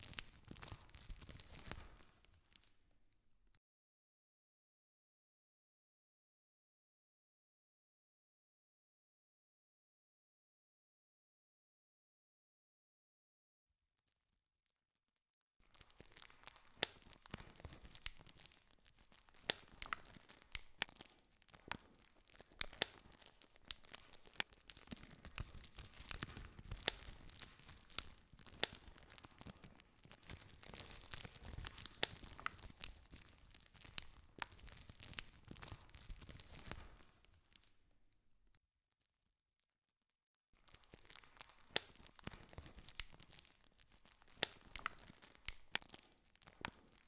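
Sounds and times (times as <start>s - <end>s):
campfire crackling: 0.0s - 2.7s, 15.7s - 37.7s, 40.7s - 47.0s.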